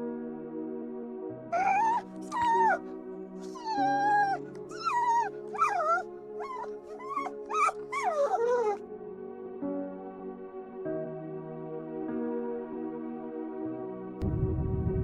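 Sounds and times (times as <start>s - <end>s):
background music: 0.0s - 15.0s
dog whimpering: 1.6s - 2.8s, 3.4s - 8.8s.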